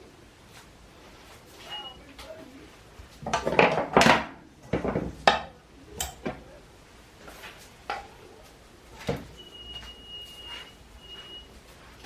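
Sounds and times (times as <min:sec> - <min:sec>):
cookware clattering: 0:03.3 - 0:06.4.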